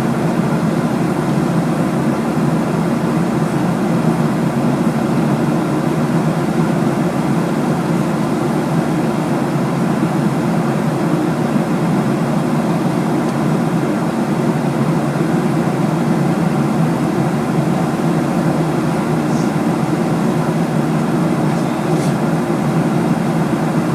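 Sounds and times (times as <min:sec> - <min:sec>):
airliner cabin engine roar: 0:00.0 - 0:23.9.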